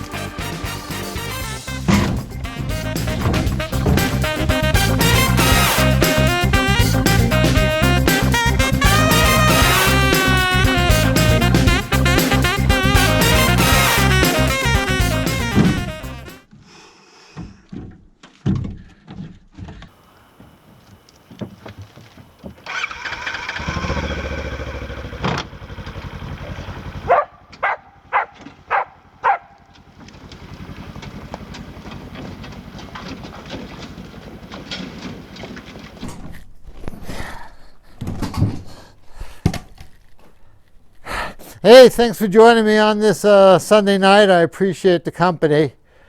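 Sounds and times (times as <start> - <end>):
short sharp loud bursts: 0.0 - 16.4
small engine running unevenly: 22.5 - 35.9.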